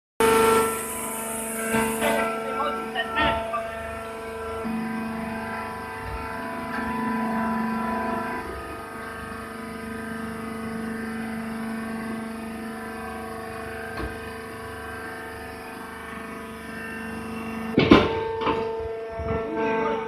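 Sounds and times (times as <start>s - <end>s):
hydraulic motor and pump humming: 0.2s - 20.0s
loud metallic clank: 17.8s - 19.6s.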